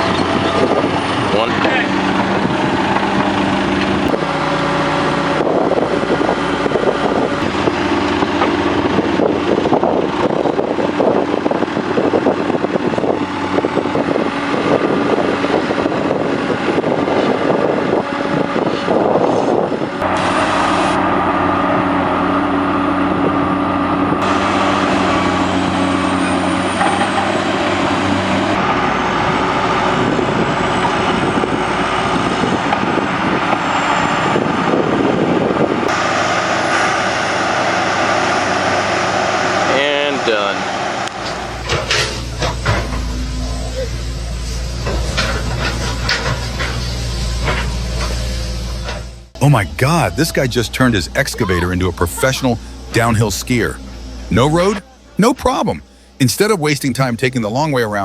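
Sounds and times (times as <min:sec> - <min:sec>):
construction machinery diesel engines: 0:00.0 - 0:58.0
machinery clanking: 0:41.0 - 0:56.6.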